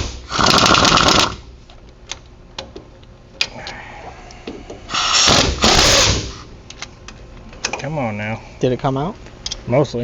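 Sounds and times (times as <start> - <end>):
impact wrench hammering: 5.0 - 6.4.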